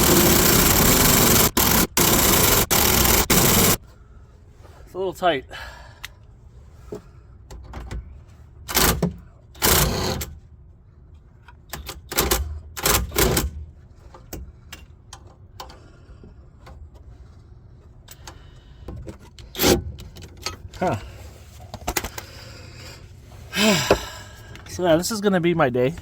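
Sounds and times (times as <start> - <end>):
impact wrench hammering: 0.0 - 3.8.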